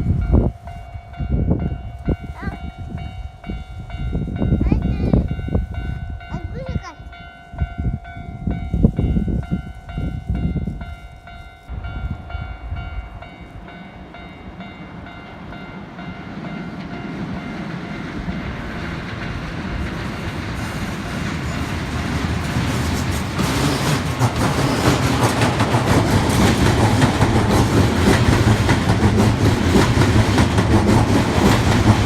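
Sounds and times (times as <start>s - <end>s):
level-crossing alarm bell: 0.0s - 18.3s
approaching train: 0.0s - 32.0s.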